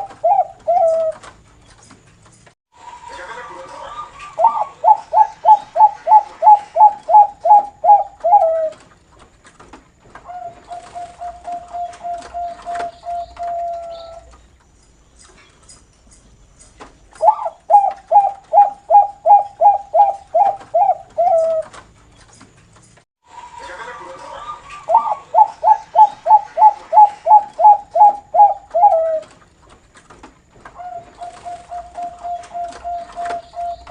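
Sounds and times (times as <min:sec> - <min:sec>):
dove cooing: 0:00.0 - 0:01.3, 0:03.9 - 0:08.9, 0:10.2 - 0:14.3, 0:17.2 - 0:21.8, 0:23.7 - 0:29.4, 0:30.8 - 0:33.9.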